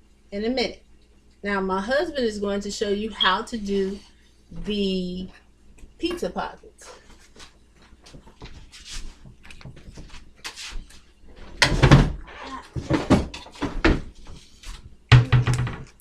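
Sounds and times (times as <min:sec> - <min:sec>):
kitchen items knocking and clattering: 0:11.4 - 0:14.4, 0:15.1 - 0:16.0.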